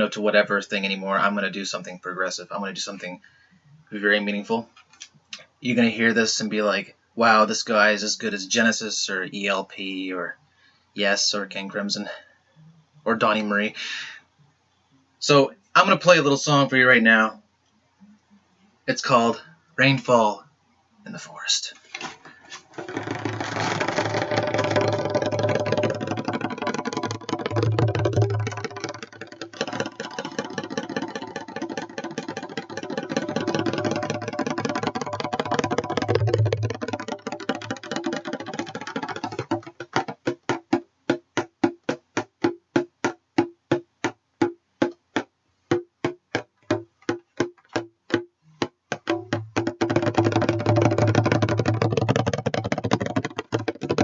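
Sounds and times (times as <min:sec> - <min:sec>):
bongo drum roll and hits: 0:22.8 - 0:54.0.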